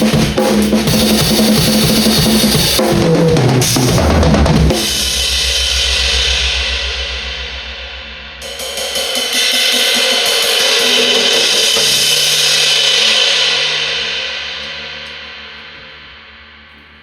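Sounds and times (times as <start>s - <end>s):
crash cymbal struck and ringing: 4.8s - 15.5s.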